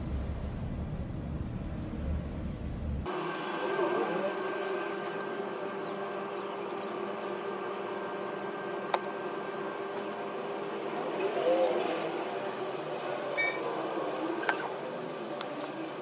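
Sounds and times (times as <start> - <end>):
electrical hum: 0.0 - 16.0
quick electronic beeps: 13.4 - 13.6.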